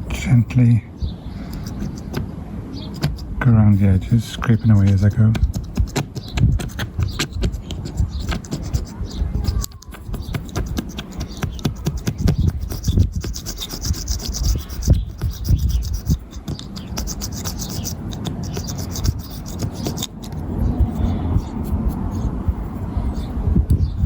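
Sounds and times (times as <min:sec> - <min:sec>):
razor blade scraping glass: 0:04.1 - 0:20.4.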